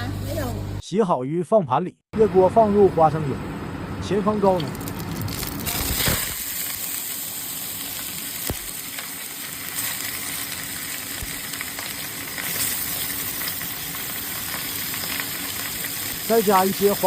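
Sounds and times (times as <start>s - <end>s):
fish sizzling in hot oil: 4.8s - 17.0s.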